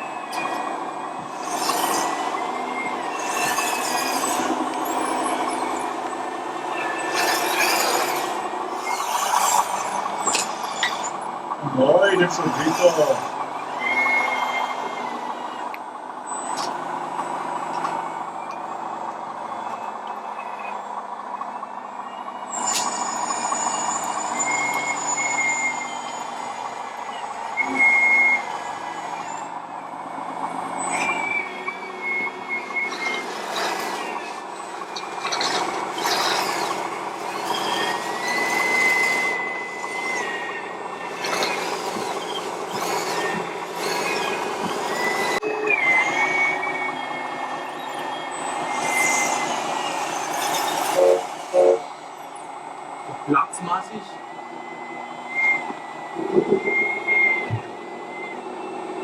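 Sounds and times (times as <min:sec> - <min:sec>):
truck engine drone: 0:00.0 - 0:59.0
high held beeps: 0:51.0 - 0:51.9.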